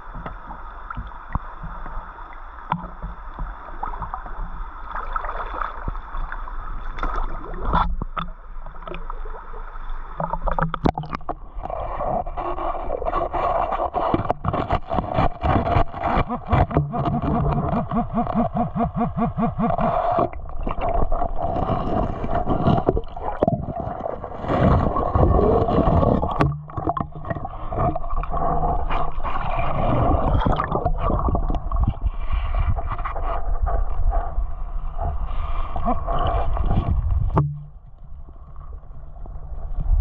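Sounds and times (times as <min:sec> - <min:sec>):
water splashes and knocks: 0:02.7 - 0:06.0, 0:06.9 - 0:09.1, 0:10.2 - 0:11.7, 0:20.6 - 0:28.5, 0:37.0 - 0:38.0
creek water sloshing and gurgling: 0:10.2 - 0:32.2.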